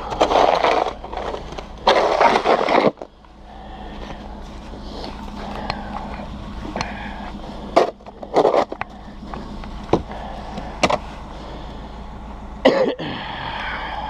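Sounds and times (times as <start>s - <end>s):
snow shovel scraping and knocking: 0.0s - 3.1s
steady low hum: 0.0s - 14.0s.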